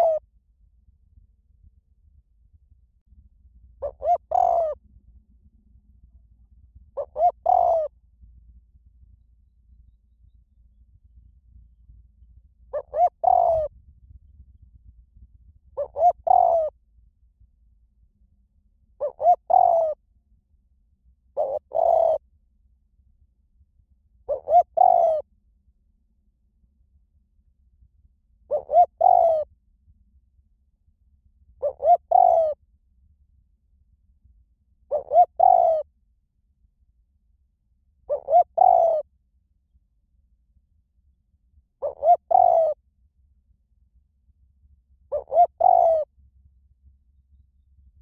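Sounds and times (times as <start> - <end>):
dove cooing: 0.0 - 0.2, 3.8 - 4.8, 7.0 - 7.9, 12.7 - 13.7, 15.8 - 16.7, 19.0 - 20.0, 21.4 - 22.2, 24.3 - 25.2, 28.5 - 29.5, 31.6 - 32.6, 34.9 - 35.8, 38.1 - 39.0, 41.8 - 42.8, 45.1 - 46.1.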